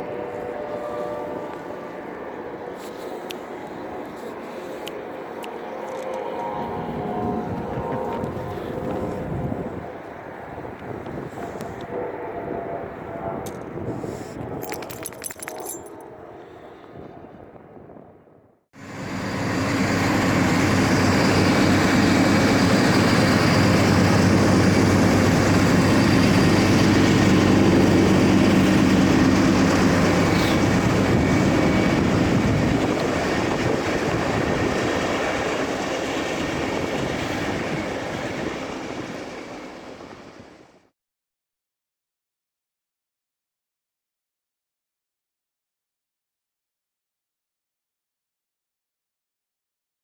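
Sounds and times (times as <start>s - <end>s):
locomotive engine drone: 0.0s - 18.2s, 18.8s - 40.8s
train wheels rumbling on rails: 18.8s - 40.4s.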